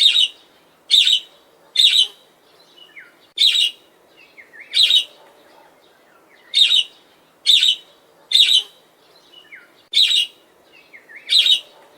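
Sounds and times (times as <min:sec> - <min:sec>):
budgerigar chirps: 0:00.0 - 0:02.2, 0:06.5 - 0:06.9, 0:07.5 - 0:08.8, 0:10.0 - 0:10.3, 0:11.2 - 0:11.7.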